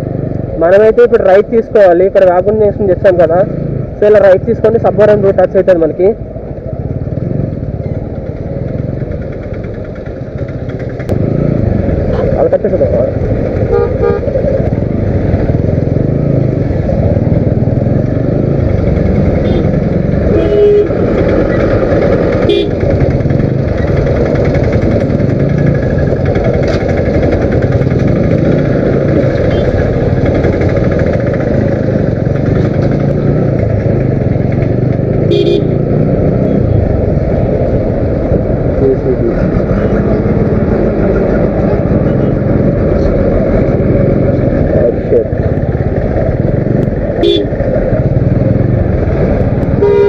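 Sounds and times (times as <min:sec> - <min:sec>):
motorcycle running: 0:00.0 - 0:50.0
vehicle horn: 0:13.7 - 0:14.3, 0:19.4 - 0:19.7, 0:20.3 - 0:21.0, 0:22.4 - 0:22.8, 0:29.5 - 0:29.7, 0:35.3 - 0:35.8, 0:47.2 - 0:47.6, 0:49.8 - 0:50.0.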